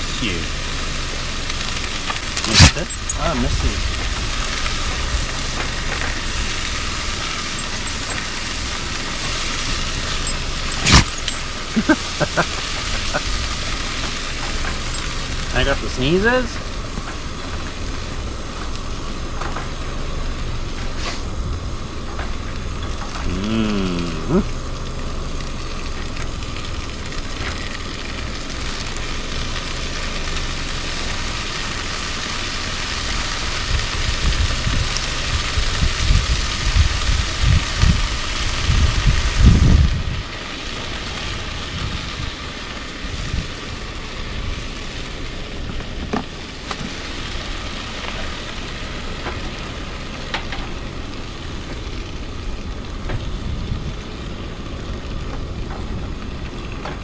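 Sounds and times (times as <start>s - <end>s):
steady hiss: 0.0s - 57.0s
wind buffeting microphone: 33.5s - 46.3s.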